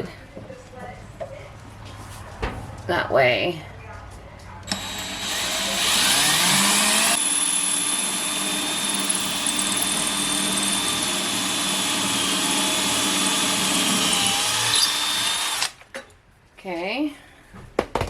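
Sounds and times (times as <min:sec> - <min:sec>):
power drill boring into tile: 0:04.7 - 0:15.8.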